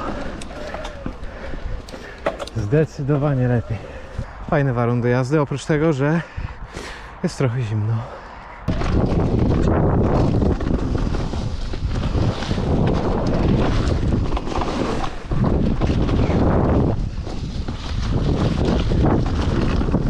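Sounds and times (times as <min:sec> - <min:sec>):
bike knocking and rattling: 0:00.0 - 0:04.2
wind buffeting microphone: 0:00.0 - 0:20.0.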